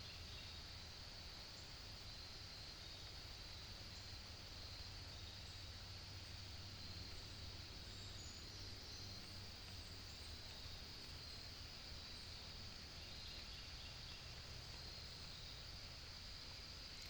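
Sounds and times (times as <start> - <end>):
faint bird chirps: 4.9 - 17.0.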